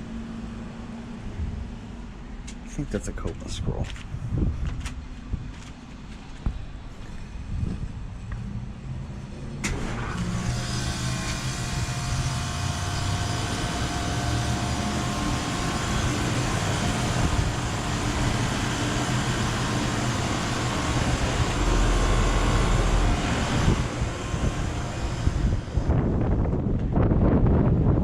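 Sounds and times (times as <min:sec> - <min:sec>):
condenser fan whooshing: 0:00.0 - 0:28.0
constant hum: 0:00.0 - 0:28.0.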